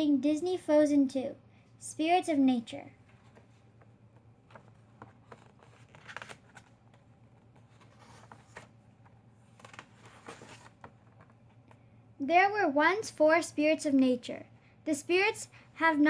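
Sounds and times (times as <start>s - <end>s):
low steady hum: 0.0s - 16.0s
book rustling and clicking: 3.0s - 11.9s.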